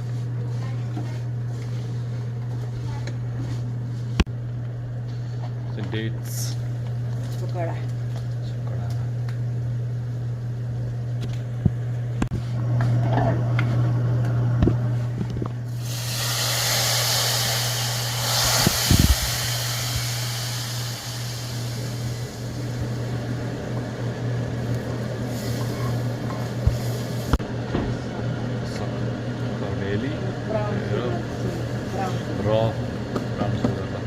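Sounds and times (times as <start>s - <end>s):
steady low hum: 0.0s - 34.0s
cooking hiss: 15.7s - 23.6s, 25.2s - 27.4s.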